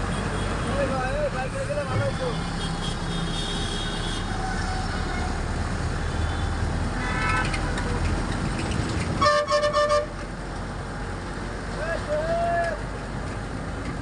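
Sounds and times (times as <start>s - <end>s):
road traffic: 0.0s - 14.0s
vehicle horn honking: 9.2s - 10.1s.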